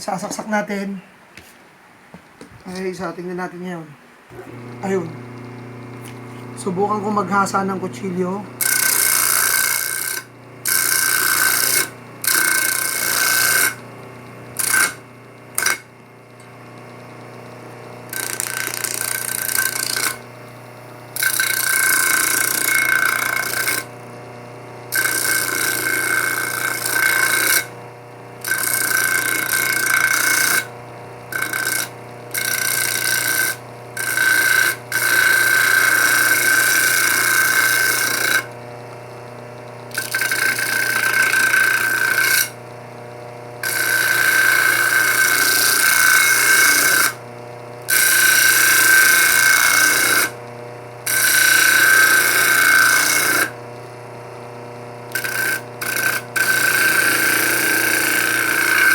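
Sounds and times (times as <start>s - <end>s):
motor humming: 4.3s - 58.9s
knife blade grinding: 7.6s - 13.8s, 14.6s - 15.0s, 15.6s - 15.9s, 18.1s - 20.3s, 21.2s - 23.9s, 24.9s - 27.7s, 28.4s - 30.7s, 31.3s - 38.6s, 39.9s - 42.6s, 43.6s - 47.2s, 47.9s - 50.4s, 51.1s - 53.6s, 55.1s - 58.9s.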